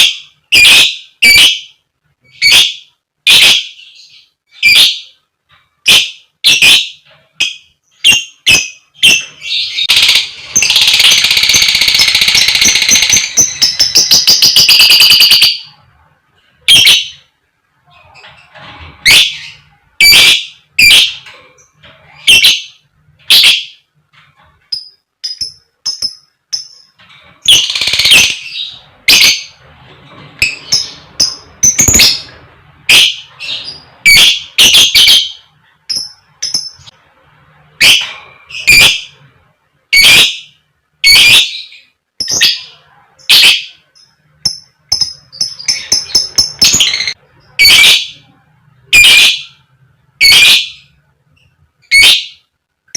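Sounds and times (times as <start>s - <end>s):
lovebird harsh calls: 0.0s - 1.7s, 22.2s - 23.8s, 27.4s - 29.5s, 32.9s - 35.4s, 38.6s - 39.1s, 39.9s - 41.7s, 44.9s - 48.2s, 48.9s - 49.6s, 50.2s - 50.9s, 51.8s - 52.4s.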